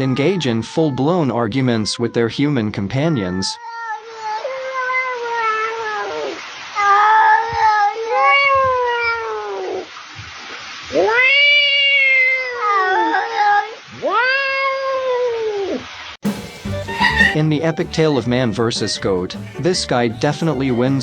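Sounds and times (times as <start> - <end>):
cat yowling: 3.3 - 9.9, 10.9 - 15.8, 16.7 - 17.4.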